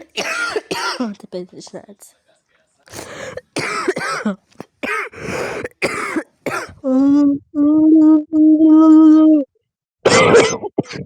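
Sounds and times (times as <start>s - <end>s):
person coughing: 0.0s - 1.2s, 2.9s - 7.2s, 10.1s - 11.0s
wheezing breaths: 2.9s - 3.6s, 5.0s - 5.8s.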